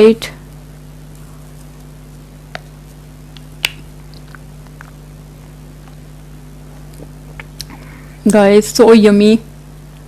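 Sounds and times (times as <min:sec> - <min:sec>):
steady low hum: 0:00.0 - 0:10.0
lip smack: 0:03.3 - 0:05.0
wet mouth eating sounds: 0:03.3 - 0:05.1.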